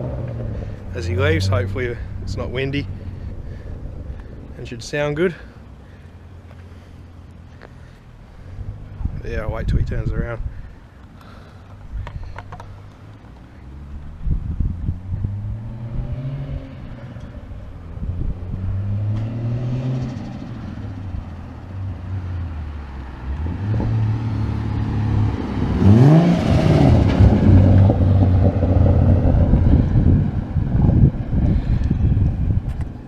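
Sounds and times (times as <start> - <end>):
wind buffeting microphone: 8.6 - 10.8, 14.0 - 19.1, 23.3 - 24.4, 25.0 - 33.0.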